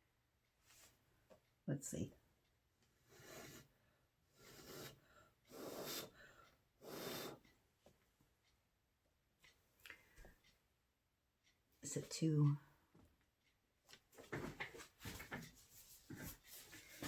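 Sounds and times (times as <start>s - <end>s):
faint puffs of breath: 4.4s - 7.5s.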